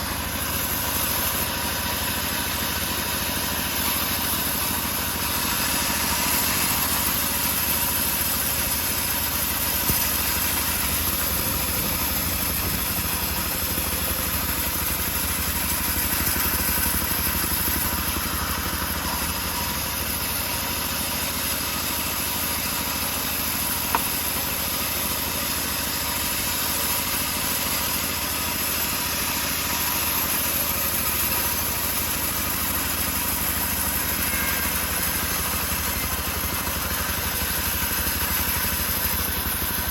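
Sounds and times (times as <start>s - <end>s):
bandsaw sawmill engine running: 0.0s - 39.9s.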